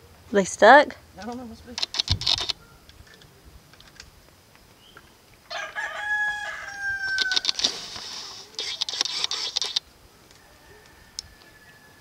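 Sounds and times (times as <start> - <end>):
rooster crowing: 5.5 - 7.7, 10.2 - 12.0.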